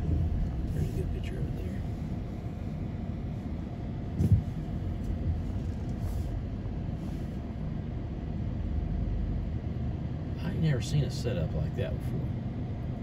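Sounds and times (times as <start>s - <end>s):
engine rumble: 0.0s - 13.0s
brief thump: 4.2s - 4.6s.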